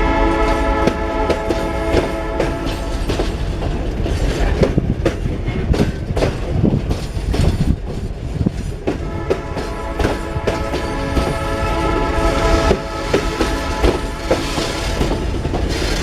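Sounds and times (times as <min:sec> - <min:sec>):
train rumble: 0:00.0 - 0:16.0
train wheels clacking on rail joints: 0:00.4 - 0:16.0.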